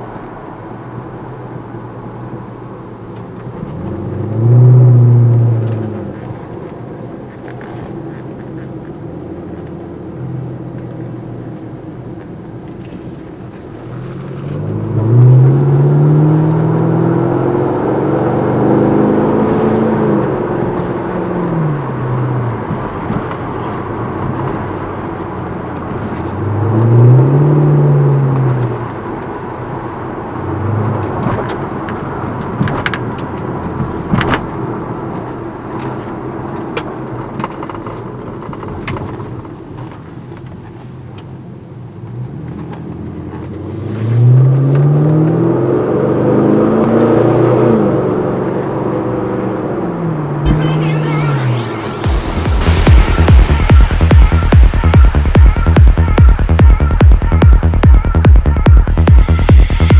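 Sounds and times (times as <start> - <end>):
car engine idling and revving: 0.0 - 59.9.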